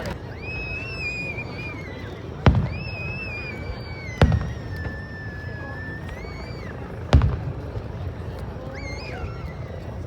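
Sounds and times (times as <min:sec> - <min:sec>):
firework high whistles: 0:00.3 - 0:07.6, 0:08.6 - 0:09.8
firework shells booming: 0:02.4 - 0:06.2, 0:07.0 - 0:08.4.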